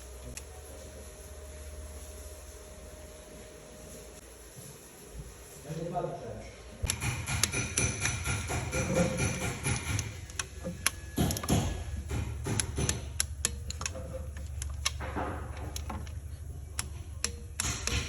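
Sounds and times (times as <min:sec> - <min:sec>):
steady low hum: 0:06.2 - 0:18.0
light metallic clicks of tools: 0:12.6 - 0:18.0.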